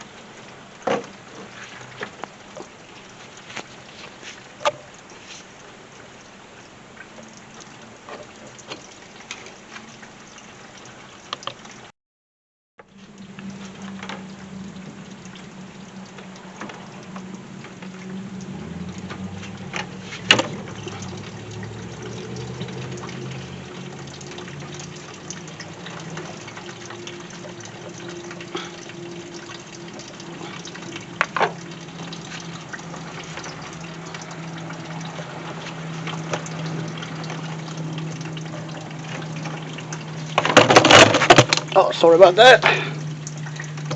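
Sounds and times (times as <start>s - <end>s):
coolant gurgling into drain pan: 0.0s - 11.9s, 12.8s - 43.9s.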